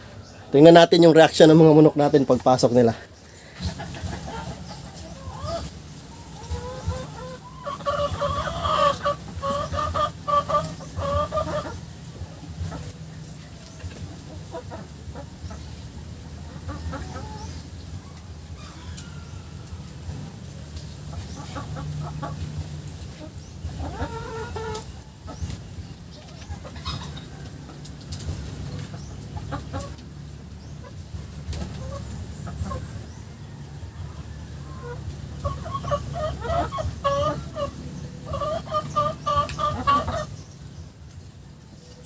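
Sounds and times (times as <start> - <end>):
chickens clucking: 0.0 - 42.0.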